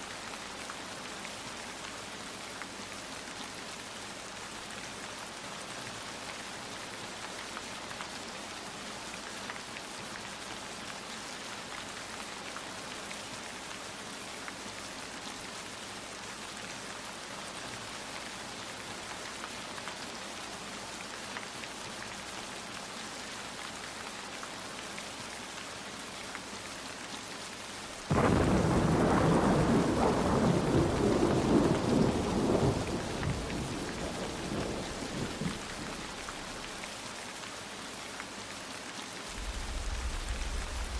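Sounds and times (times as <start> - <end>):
steady rain falling: 0.0 - 40.9
thunder clap and rumble: 28.1 - 36.6, 39.3 - 40.9.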